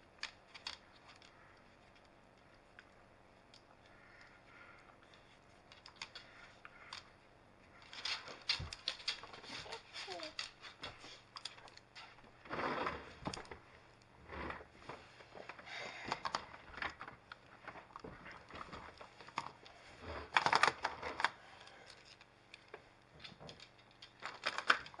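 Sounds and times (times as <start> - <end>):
magnetic pieces clicking together: 0.1 - 4.3, 5.7 - 7.1, 20.3 - 25.0.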